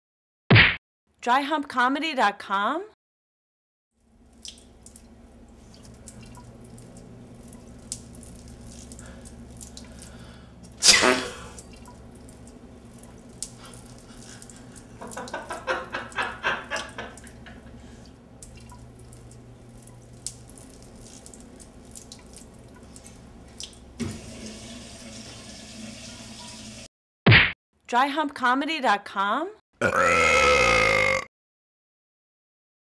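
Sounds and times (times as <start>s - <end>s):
steady low hum: 4.0s - 24.0s
urine splashing into a urinal: 4.0s - 26.7s
fart of rapid pulses: 10.8s - 11.5s
loud sneeze: 10.8s - 11.5s.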